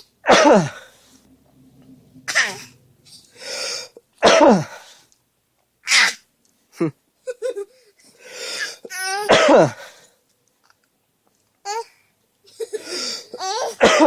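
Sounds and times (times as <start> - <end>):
child forced coughing: 8.6 - 9.8, 12.7 - 14.0.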